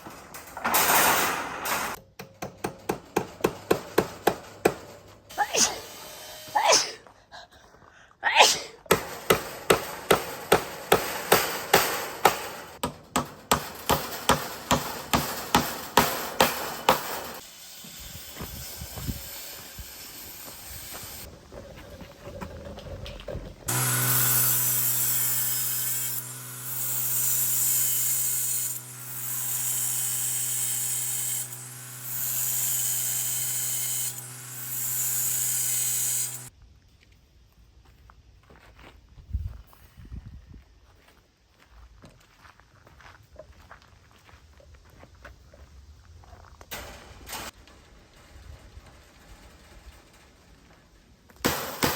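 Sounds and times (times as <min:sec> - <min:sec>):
power tool motor with hiss: 0:05.3 - 0:07.0, 0:17.3 - 0:21.3, 0:23.7 - 0:36.5.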